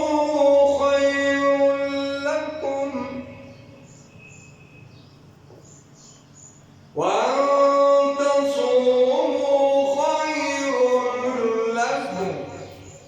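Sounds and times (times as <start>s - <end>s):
man chanting recitation: 0.0s - 4.8s, 6.9s - 13.0s.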